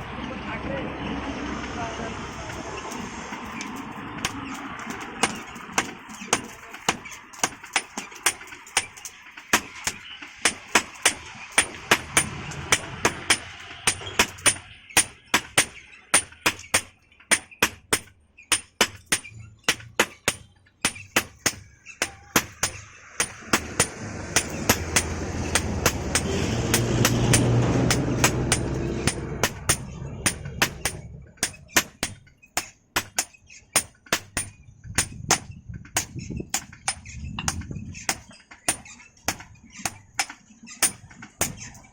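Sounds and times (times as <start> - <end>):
hammer striking iron on anvil: 3.4 - 41.8
low rumble: 22.8 - 31.8.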